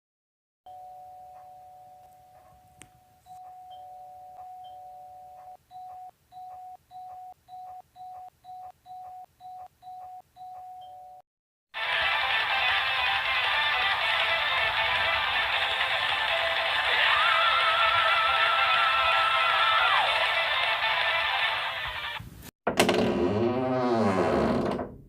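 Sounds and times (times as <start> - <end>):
two-tone electronic doorbell chime: 0.7 - 11.2.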